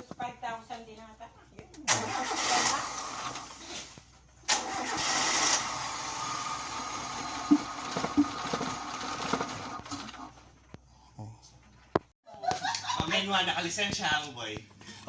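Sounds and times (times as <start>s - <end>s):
car engine cranking on starter: 1.9s - 10.4s.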